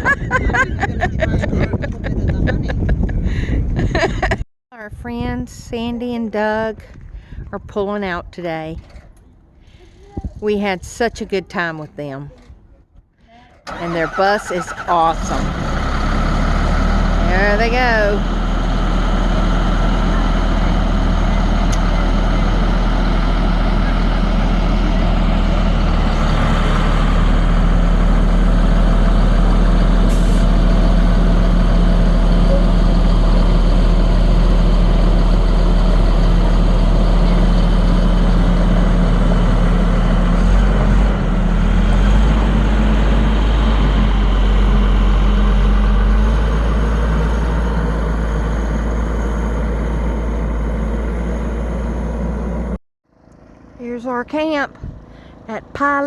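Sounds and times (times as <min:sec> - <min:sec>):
heavy vehicle engine running: 0:12.3 - 0:56.0.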